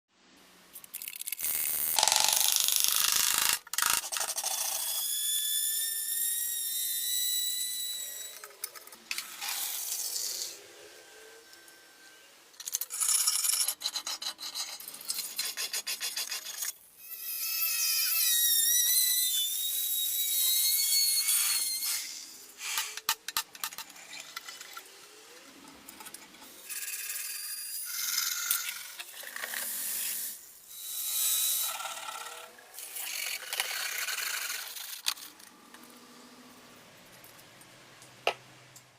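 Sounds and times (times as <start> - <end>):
blade being scraped rasping: 12.6 - 16.8.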